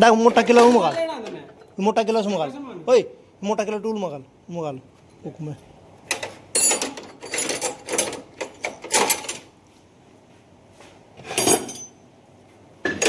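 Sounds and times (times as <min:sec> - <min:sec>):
metal hand tools clanking: 0:00.2 - 0:01.8, 0:06.1 - 0:09.4, 0:11.3 - 0:12.0.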